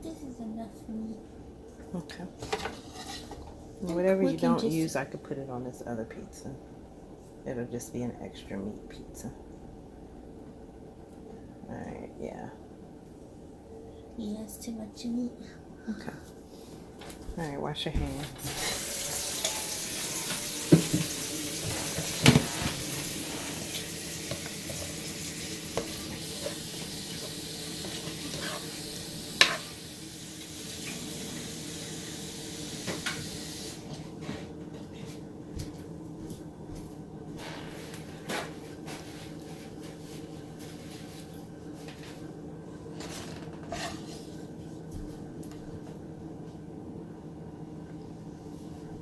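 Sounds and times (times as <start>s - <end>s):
tap water running into sink: 18.5s - 33.7s.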